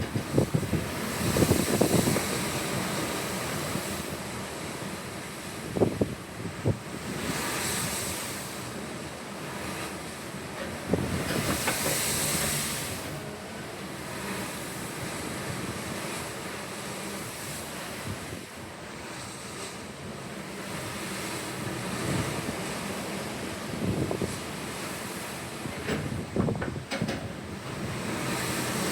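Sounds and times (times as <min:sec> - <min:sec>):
wind buffeting microphone: 0:00.0 - 0:08.4, 0:09.5 - 0:13.1, 0:21.6 - 0:28.9
ocean waves washing in: 0:00.0 - 0:28.9.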